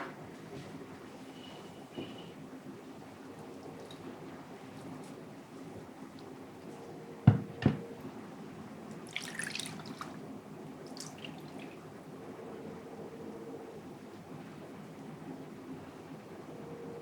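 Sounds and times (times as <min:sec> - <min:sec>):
dishware knocking: 0:07.3 - 0:07.9
liquid dripping and splashing: 0:09.0 - 0:10.2, 0:10.8 - 0:11.8.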